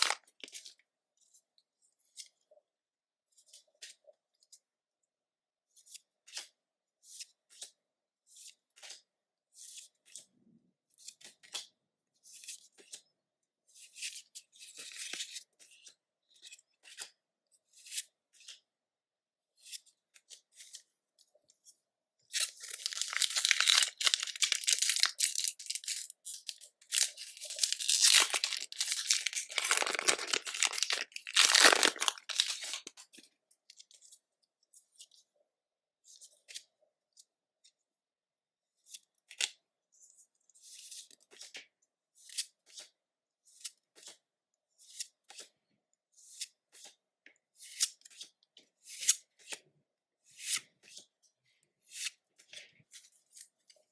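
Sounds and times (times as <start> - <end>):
foil wrapper tearing and crinkling: 0.0 - 0.2, 22.4 - 33.0
packaging clicks and rustles: 0.0 - 0.5, 22.4 - 33.0.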